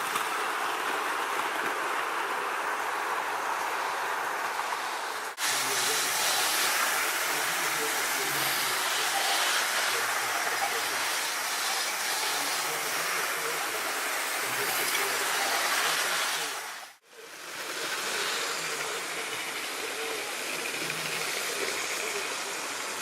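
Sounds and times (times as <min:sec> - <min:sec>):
model train running on track: 0:00.0 - 0:23.0.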